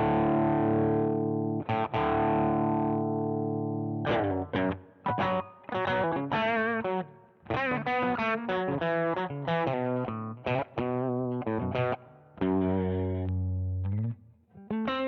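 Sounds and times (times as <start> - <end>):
distorted electric guitar riff: 0.0 - 7.0.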